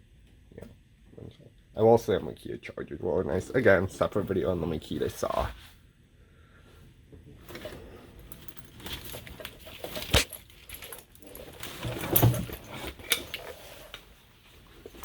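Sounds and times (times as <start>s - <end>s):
rustling: 7.4s - 15.0s
small metal items clinking: 8.2s - 13.6s.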